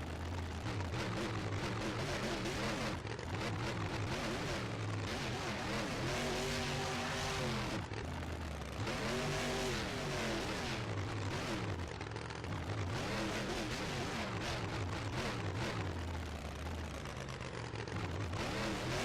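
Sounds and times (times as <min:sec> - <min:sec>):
vehicle engine revving: 0:00.0 - 0:19.0.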